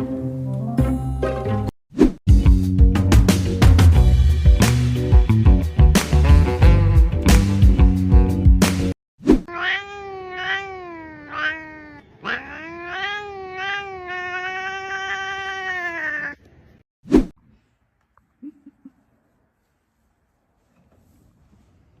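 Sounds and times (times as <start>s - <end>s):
cat yowling: 9.5s - 16.5s.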